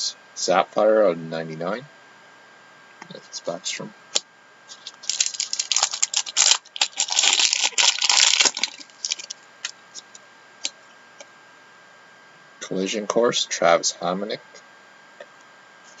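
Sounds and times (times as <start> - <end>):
cards rustling: 4.7 - 9.7
wrapper crinkling and tearing: 4.7 - 9.8.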